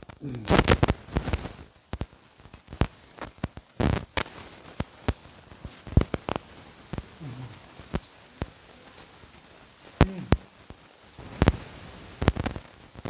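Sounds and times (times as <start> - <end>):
low murmur: 4.8 - 11.9.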